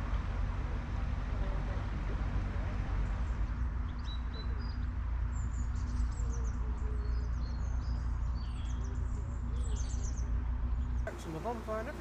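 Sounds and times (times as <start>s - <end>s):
boat diesel engine droning: 11.1s - 12.0s
small birds chirping: 11.1s - 12.0s.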